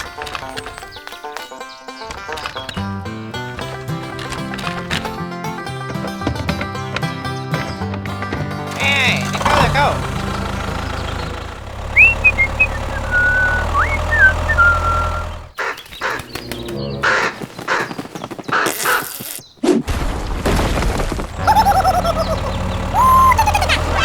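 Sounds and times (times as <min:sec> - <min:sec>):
bird chirps: 0:10.8 - 0:19.6, 0:21.4 - 0:24.0
crow cawing: 0:15.6 - 0:16.3, 0:17.0 - 0:19.3, 0:21.4 - 0:24.0.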